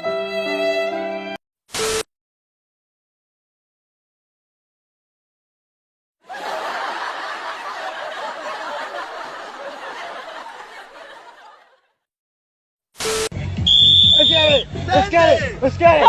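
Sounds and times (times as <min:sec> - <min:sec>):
crowd laughing: 0:06.2 - 0:12.0.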